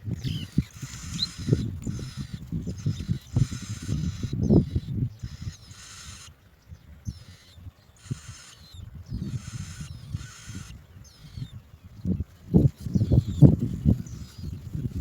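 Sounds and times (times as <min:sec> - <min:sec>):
rasping ratchet-like bird calls: 0:00.2 - 0:11.5.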